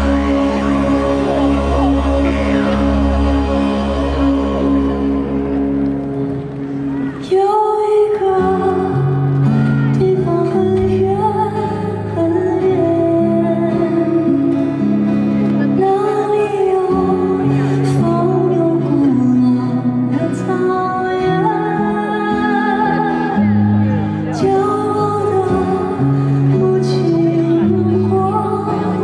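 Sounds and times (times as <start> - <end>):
high male voice singing: 0.0 - 5.8
sustained instrumental accompaniment: 0.0 - 7.6.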